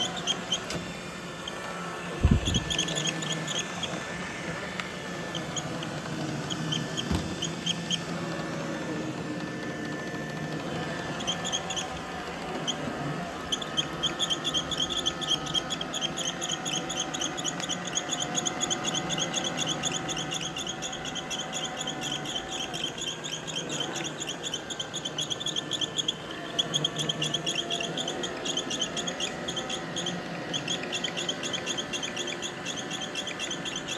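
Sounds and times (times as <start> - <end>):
robot vacuum humming: 0.0 - 33.9
high-pitched squeaks: 2.2 - 4.1, 13.5 - 33.9.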